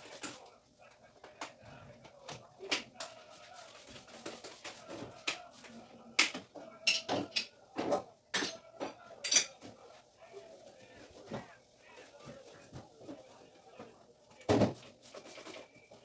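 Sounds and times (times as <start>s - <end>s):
dishes and utensils clinking: 6.2s - 9.8s.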